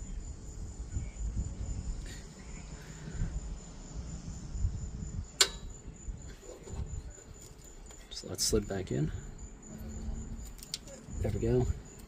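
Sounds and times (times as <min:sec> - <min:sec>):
crickets chirping: 0:00.0 - 0:12.0
low handling rumble: 0:00.6 - 0:12.0
sharp click: 0:05.4 - 0:05.7.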